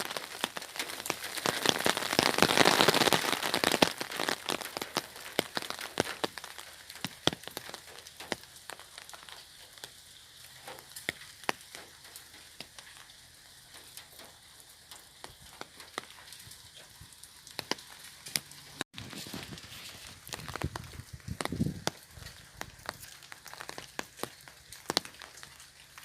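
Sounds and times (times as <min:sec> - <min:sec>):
raindrops tapping on umbrella: 0:00.0 - 0:26.0
steady rain patter: 0:00.0 - 0:26.0.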